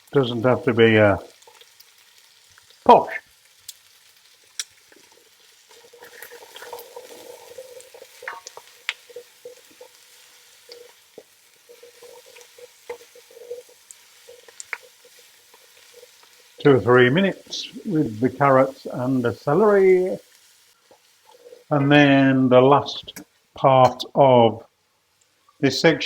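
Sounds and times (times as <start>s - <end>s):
vegetables sizzling in oil: 0.0s - 23.8s
stirring clicks and scrapes: 4.6s - 16.4s.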